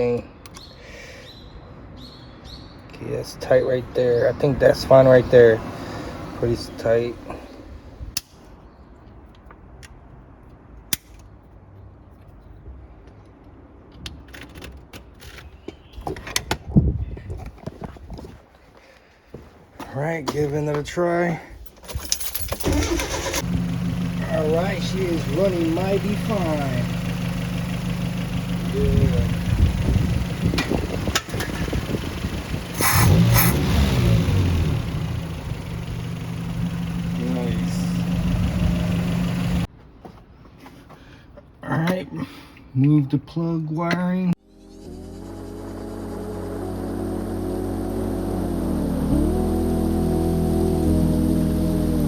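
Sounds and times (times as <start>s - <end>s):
car engine running: 22.5s - 39.7s.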